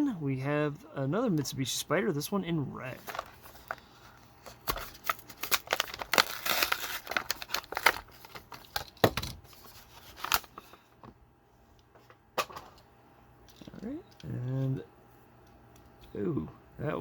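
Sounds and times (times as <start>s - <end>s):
packaging crinkling and rustling: 2.9s - 11.2s.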